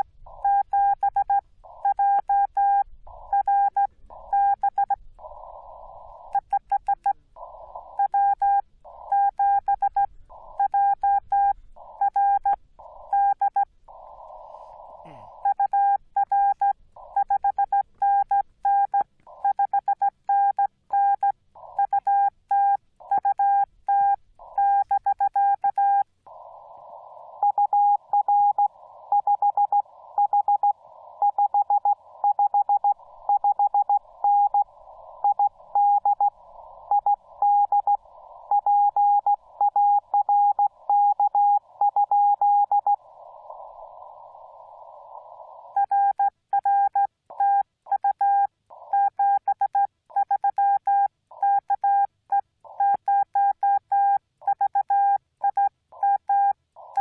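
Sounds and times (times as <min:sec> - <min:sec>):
radio hiss: 0:00.0 - 0:00.6, 0:01.4 - 0:02.4, 0:03.0 - 0:18.1, 0:21.4 - 0:21.9, 0:22.8 - 0:25.2, 0:26.1 - 0:46.0.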